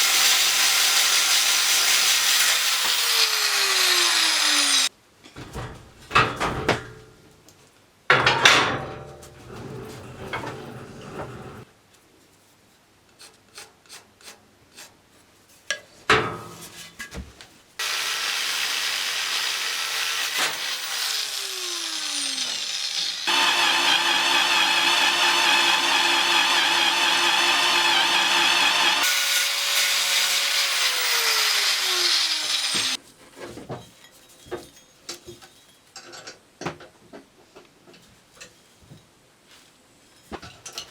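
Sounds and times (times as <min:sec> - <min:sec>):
power tool running: 0:00.0 - 0:04.9, 0:17.8 - 0:33.0.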